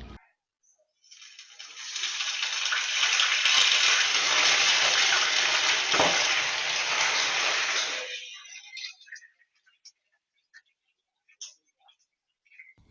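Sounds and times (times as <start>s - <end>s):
food sizzling in frying pan: 1.0s - 9.2s.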